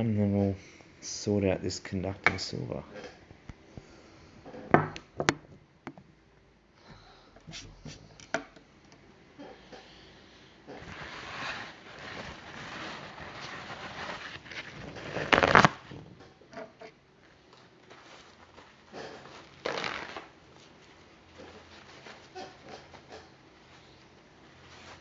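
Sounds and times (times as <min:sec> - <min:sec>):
cloth wiping circuit board: 0:10.8 - 0:15.4.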